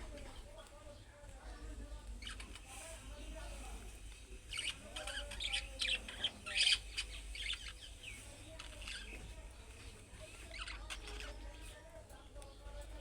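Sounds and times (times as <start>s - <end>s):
budgerigars chirping: 4.5s - 11.6s.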